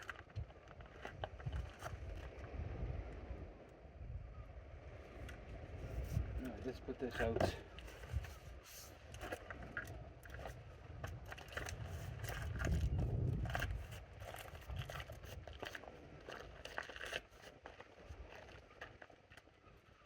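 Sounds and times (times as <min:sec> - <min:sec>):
wind rumble on microphone: 0:00.0 - 0:18.8
handling clicks and scrapes: 0:07.1 - 0:19.5.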